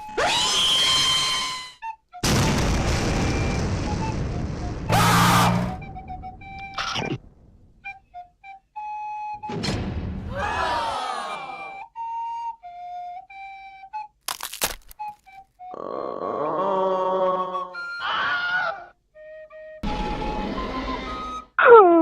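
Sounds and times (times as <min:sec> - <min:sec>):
flute-like held notes: 0:03.6 - 0:07.2, 0:07.8 - 0:09.7, 0:10.3 - 0:14.1.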